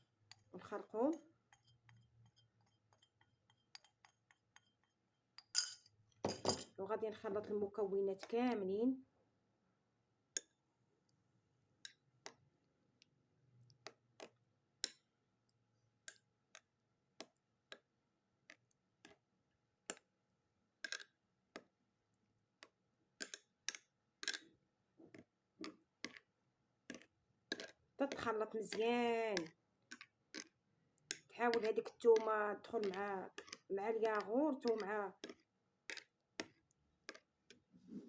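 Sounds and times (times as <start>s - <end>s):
spoon clicking against container: 31.1s - 36.1s.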